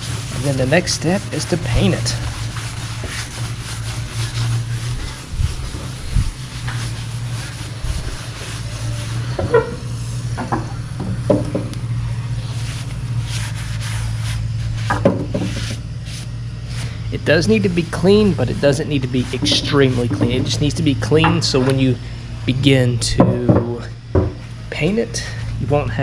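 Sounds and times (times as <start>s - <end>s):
low mechanical hum: 0.0s - 26.0s.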